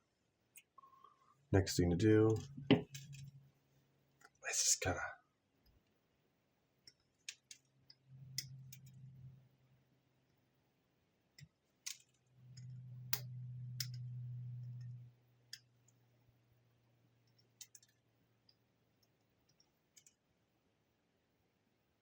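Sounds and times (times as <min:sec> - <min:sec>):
low steady hum: 0:07.6 - 0:22.0
small clicks and taps: 0:11.4 - 0:16.0, 0:17.2 - 0:20.2.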